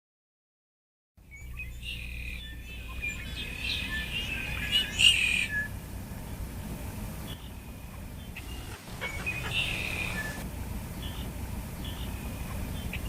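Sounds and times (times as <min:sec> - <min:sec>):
low rumble of breeze: 0:01.2 - 0:13.0
songbirds chirping: 0:01.2 - 0:13.0.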